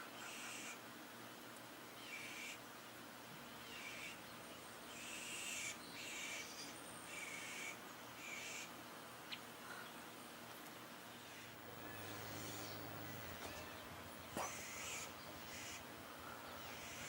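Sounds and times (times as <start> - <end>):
bird calling harshly: 11.2 - 17.0.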